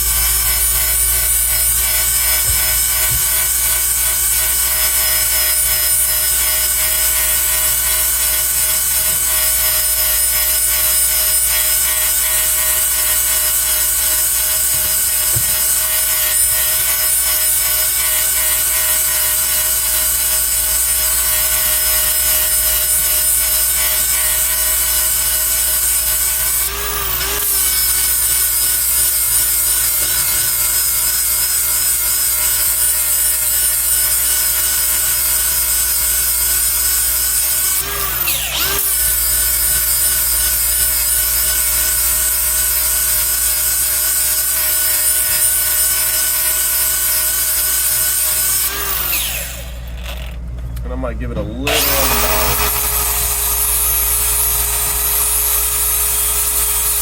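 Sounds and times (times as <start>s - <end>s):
angle grinder grinding metal: 0.0s - 57.0s.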